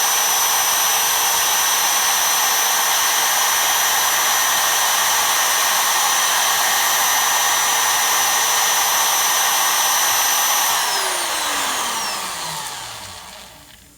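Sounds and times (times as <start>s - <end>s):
motor spinning down: 0.0s - 13.9s
spindle motor whining: 9.1s - 13.9s.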